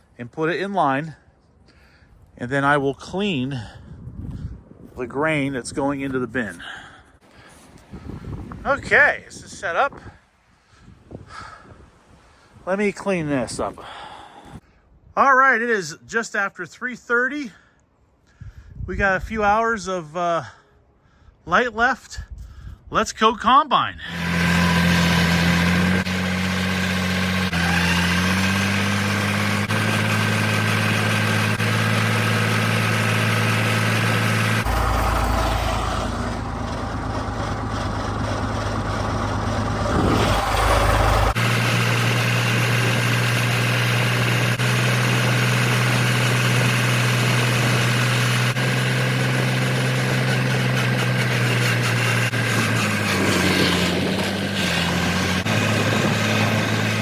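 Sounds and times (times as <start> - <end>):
vehicle engine running: 24.1 - 57.0
deep low rumble: 34.6 - 41.4.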